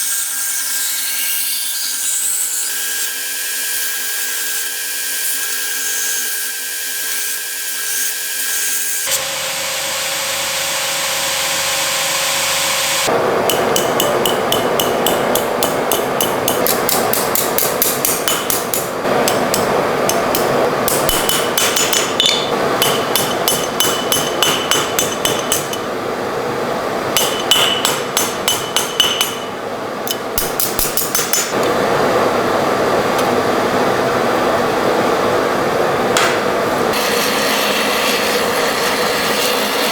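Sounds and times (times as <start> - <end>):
hammer striking steel on anvil: 13.5 - 25.9, 27.2 - 29.5, 30.1 - 31.7.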